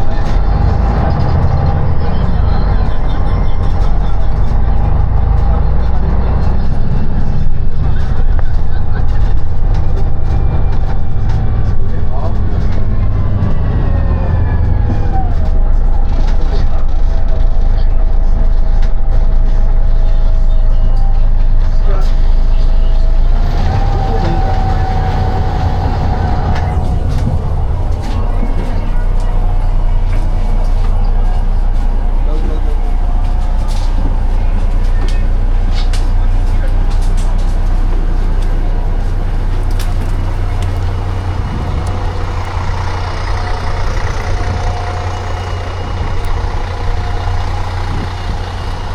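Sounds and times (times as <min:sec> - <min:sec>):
bus engine and road rumble: 0:00.0 - 0:48.9.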